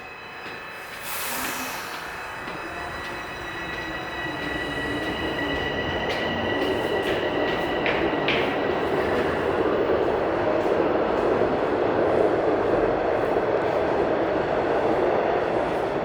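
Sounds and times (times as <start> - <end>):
subway train motor whine: 0.0 - 16.0
brief hiss: 1.0 - 2.2.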